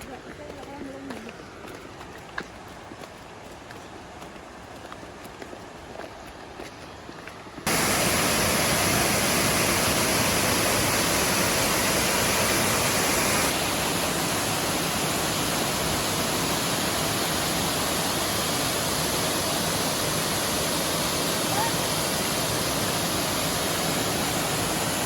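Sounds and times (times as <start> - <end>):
waterfall rushing: 7.7 - 25.0.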